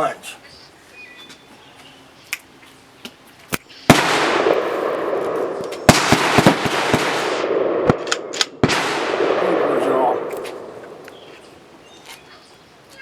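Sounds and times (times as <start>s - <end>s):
sharp cracks: 3.1s - 12.2s
shotgun blasts: 3.9s - 11.5s.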